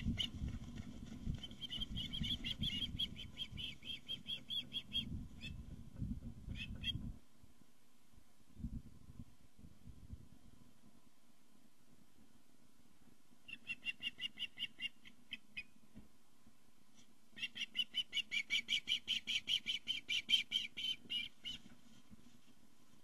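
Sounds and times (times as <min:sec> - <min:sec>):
osprey chirping: 0:01.4 - 0:05.6.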